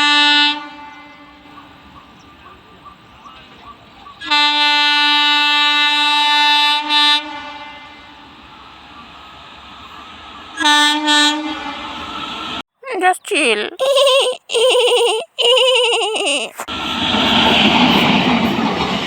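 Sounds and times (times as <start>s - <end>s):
locomotive air horn: 0.0s - 1.6s, 4.3s - 8.4s, 10.6s - 12.3s
train running: 0.0s - 12.6s, 16.7s - 19.0s.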